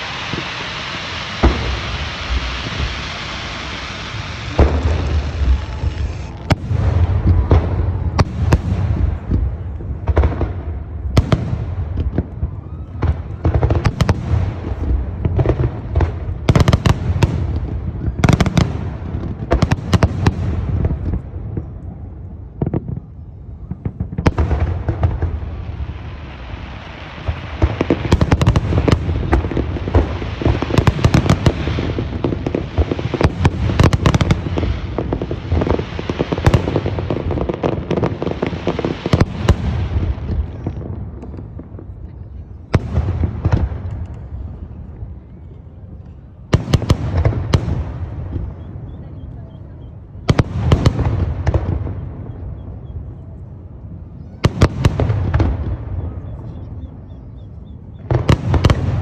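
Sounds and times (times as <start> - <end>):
deep rolling rumble: 0.0 - 19.6
fireworks booming bursts: 0.0 - 45.0, 46.4 - 53.2, 54.3 - 59.0
fireworks crackling: 0.0 - 45.2, 46.5 - 48.8, 50.2 - 52.3, 54.4 - 56.3, 58.0 - 59.0.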